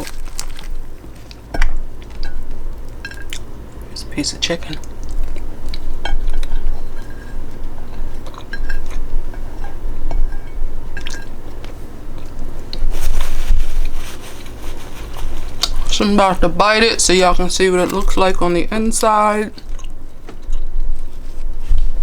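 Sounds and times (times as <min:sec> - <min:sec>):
chewing food: 0:00.0 - 0:03.9, 0:04.6 - 0:09.4, 0:13.8 - 0:16.0, 0:19.5 - 0:21.4.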